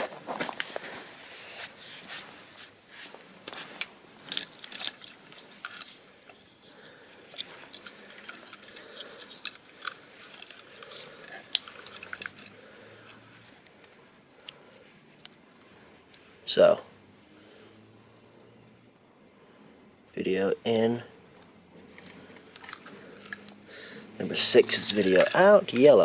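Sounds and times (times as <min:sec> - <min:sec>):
cables rustling: 0:00.0 - 0:16.6, 0:21.3 - 0:26.0
plastic connectors clicking: 0:07.3 - 0:13.8, 0:24.8 - 0:26.0.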